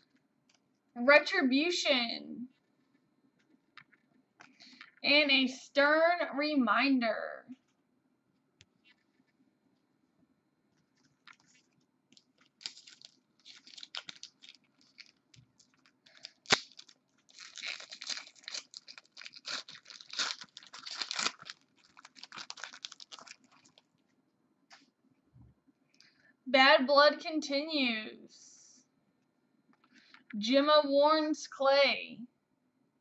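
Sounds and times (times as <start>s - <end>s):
foil wrappers tearing and crinkling: 12.2s - 23.8s.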